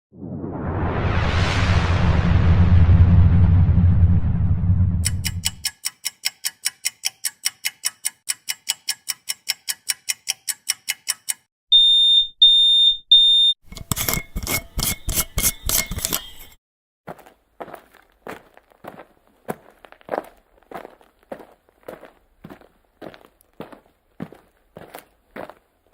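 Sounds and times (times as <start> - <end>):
high steady beeps: 11.7 - 13.6.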